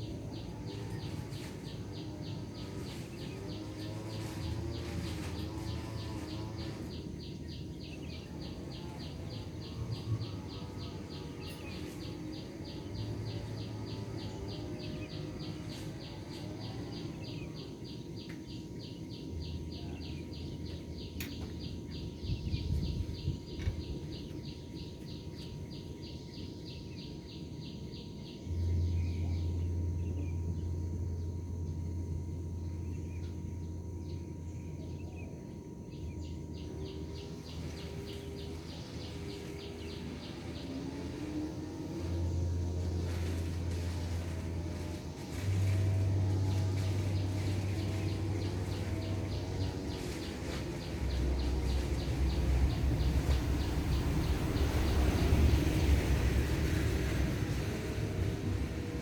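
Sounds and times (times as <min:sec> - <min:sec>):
low hum: 0:00.0 - 0:59.0.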